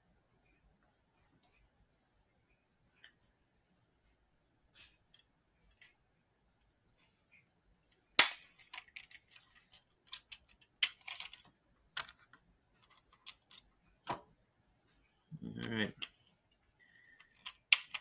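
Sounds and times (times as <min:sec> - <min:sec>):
plastic parts clicking together: 0:08.2 - 0:14.2, 0:17.2 - 0:18.0.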